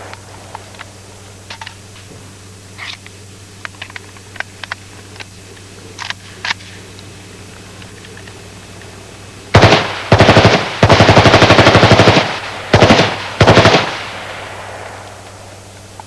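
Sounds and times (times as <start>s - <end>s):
automatic rifle firing bursts: 9.5s - 16.0s.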